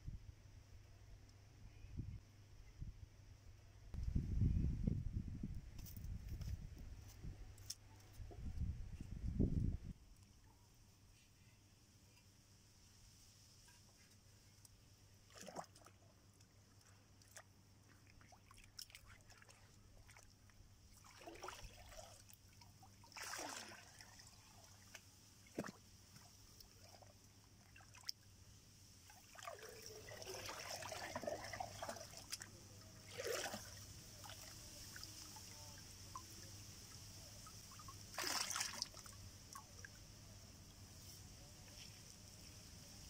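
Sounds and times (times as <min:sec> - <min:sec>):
water trickling and splashing: 0:15.2 - 0:40.8.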